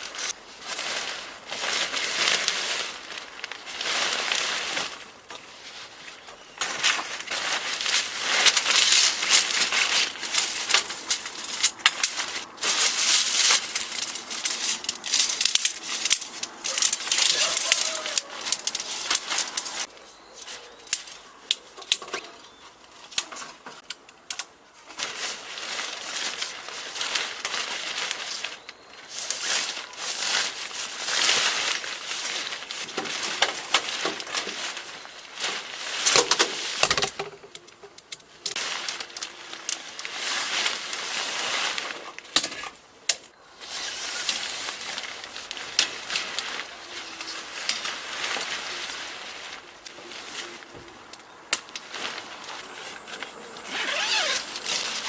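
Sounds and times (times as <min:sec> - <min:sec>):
rustling handling noises: 0:00.0 - 0:55.0
sharp clicks and knocks: 0:36.1 - 0:38.6.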